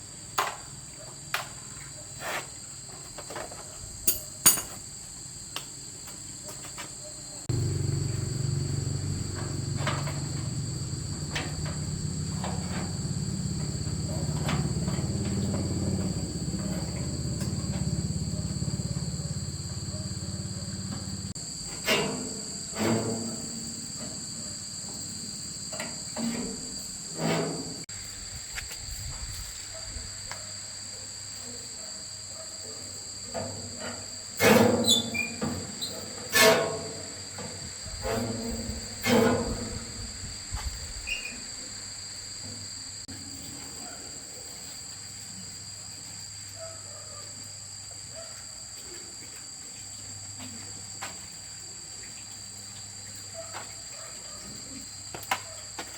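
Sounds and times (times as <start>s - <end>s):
insects chirring: 0.0s - 55.9s
low machine hum: 7.5s - 21.4s.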